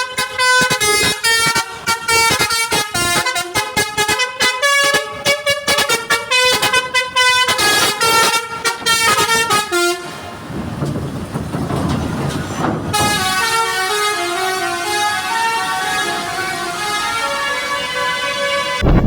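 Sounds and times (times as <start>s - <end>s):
melodic bus air horn: 0.0s - 10.4s, 12.9s - 18.8s
rushing vehicle noise: 0.0s - 19.0s.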